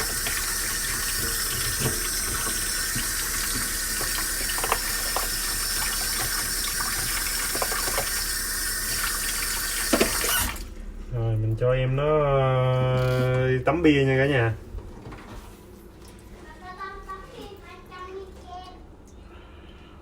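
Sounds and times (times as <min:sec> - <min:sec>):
crab being scrubbed: 0:00.0 - 0:10.1
tap running into a sink: 0:00.0 - 0:10.6.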